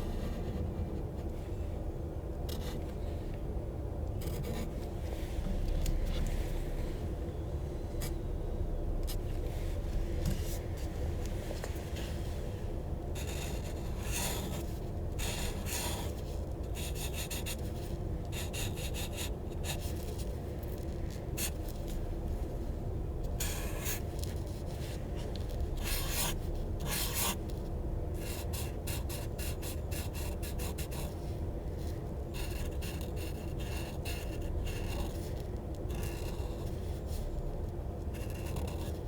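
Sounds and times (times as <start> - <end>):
low background hum: 0.0 - 39.0
pencil scribbling on paper: 13.2 - 17.7, 18.3 - 20.0, 25.8 - 27.4, 28.2 - 31.1, 32.4 - 35.3, 35.9 - 36.8.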